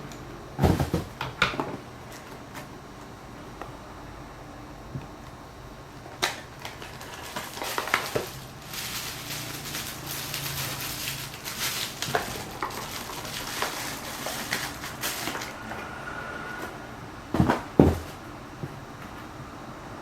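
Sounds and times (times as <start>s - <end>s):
packaging rustling and clicks: 6.1s - 15.6s.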